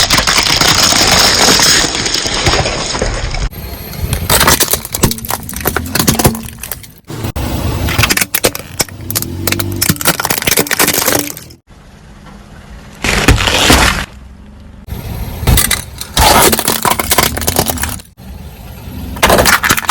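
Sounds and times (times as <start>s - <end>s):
tyre crushing plastic bottles: 0.0s - 3.5s, 4.1s - 7.1s, 7.9s - 11.6s, 13.0s - 14.2s, 15.5s - 18.2s, 19.2s - 19.9s.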